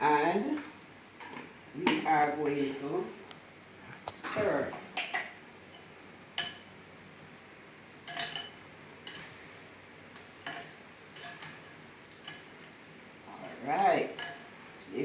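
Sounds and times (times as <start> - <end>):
spoon clinking against bowl: 5.0 - 6.8, 8.1 - 9.3, 14.2 - 14.6
spoon stirring oatmeal: 8.0 - 12.9.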